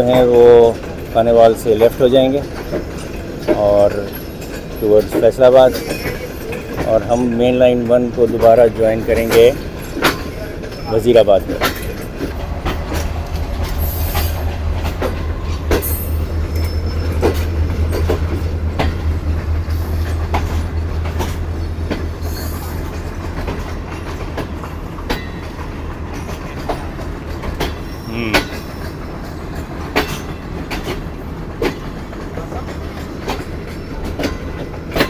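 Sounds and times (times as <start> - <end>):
train rumbling: 0.0 - 35.0
train wheels clicking over rail joints: 0.0 - 35.0.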